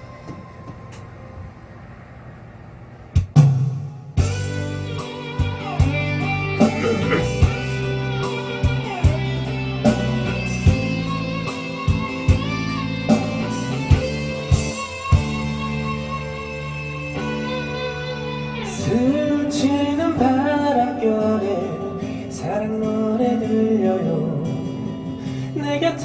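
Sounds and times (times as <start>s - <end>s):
drum kit: 3.2s - 16.0s
electric guitar: 4.2s - 26.0s.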